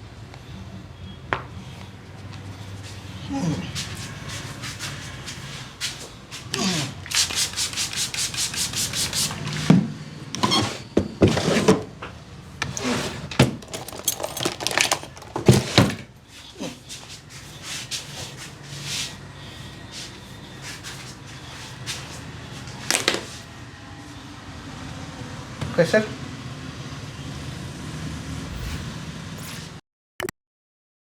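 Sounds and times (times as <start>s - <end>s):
hands rubbing scalp and hair: 3.8s - 9.5s.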